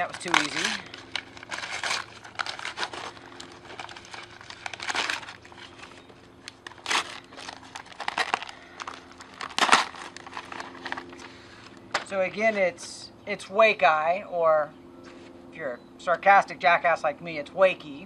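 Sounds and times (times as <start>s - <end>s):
packaging crinkling and rustling: 0.0s - 12.1s
faint steady hum: 0.0s - 18.0s.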